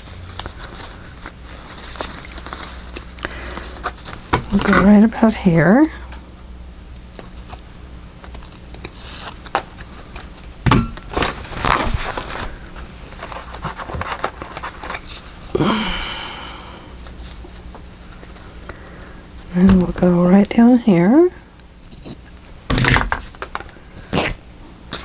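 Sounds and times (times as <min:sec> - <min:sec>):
paper rustling and crinkling: 0:00.0 - 0:05.4, 0:06.9 - 0:15.5, 0:17.0 - 0:20.0.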